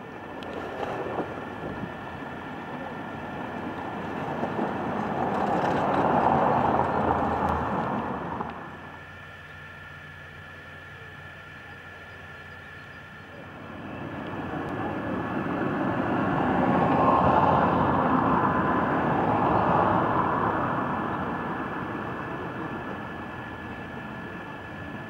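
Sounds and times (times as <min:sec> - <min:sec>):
passing vehicle rushing: 0:00.6 - 0:08.9, 0:13.6 - 0:23.6.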